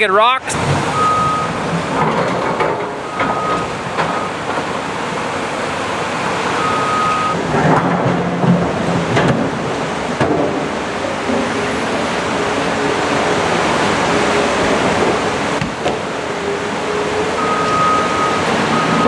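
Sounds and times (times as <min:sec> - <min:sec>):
heavy machinery rumbling roar: 0:00.0 - 0:19.0
backup alarm beeps: 0:01.0 - 0:01.6, 0:03.1 - 0:04.4, 0:06.6 - 0:07.4, 0:17.4 - 0:19.0.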